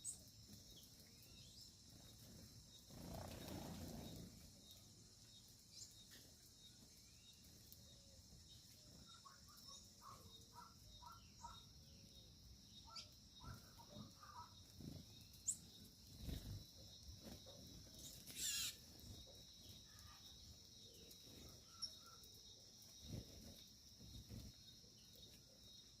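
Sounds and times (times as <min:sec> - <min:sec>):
bird chirps: 0:00.0 - 0:16.6, 0:17.2 - 0:22.4
insects buzzing: 0:00.0 - 0:26.0
loud bird call: 0:18.4 - 0:18.8.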